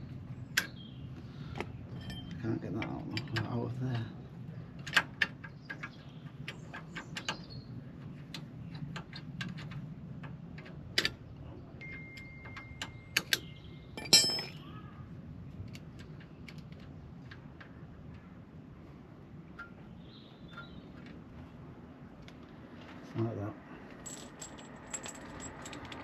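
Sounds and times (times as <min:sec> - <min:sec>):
tools and metal parts clinking: 0:01.9 - 0:04.1, 0:08.2 - 0:11.2, 0:11.8 - 0:14.6, 0:23.9 - 0:26.0
metal clank: 0:14.0 - 0:14.6.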